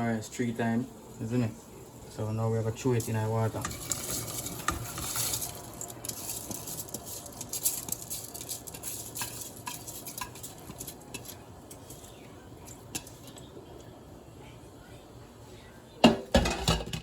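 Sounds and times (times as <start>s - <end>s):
rice grains falling into water: 3.5s - 11.4s.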